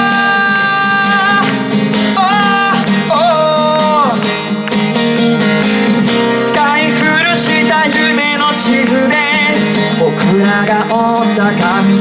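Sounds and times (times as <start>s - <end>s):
person singing: 0.0s - 4.3s, 6.1s - 12.0s
strummed acoustic guitar: 0.0s - 12.0s.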